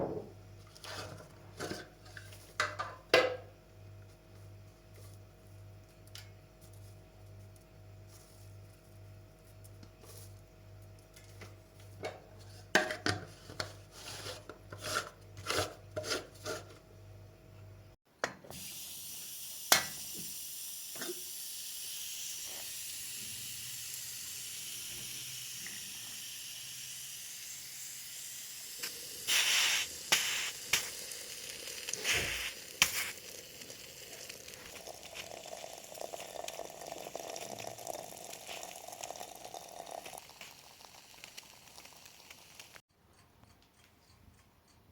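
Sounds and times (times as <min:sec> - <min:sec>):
watery hiss: 0:18.6 - 0:34.3.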